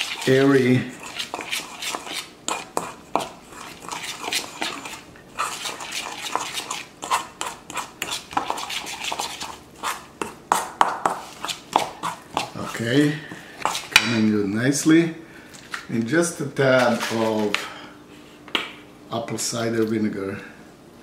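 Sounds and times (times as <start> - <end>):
utensil scraping mixing bowl: 0.0 - 14.2.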